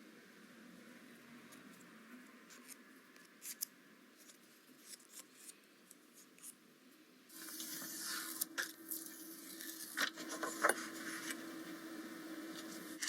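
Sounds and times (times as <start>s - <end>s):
scratchy hiss of paper: 7.3s - 11.8s.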